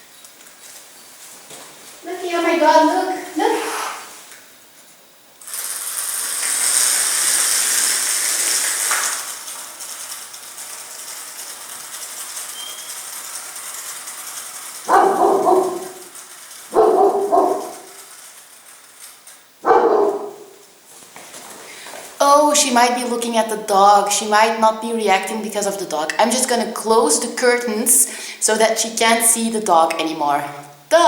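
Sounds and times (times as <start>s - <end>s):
high hiss: 2.0s - 4.7s, 5.4s - 10.3s
dog barking: 14.9s - 16.1s, 16.7s - 18.0s, 19.6s - 20.6s.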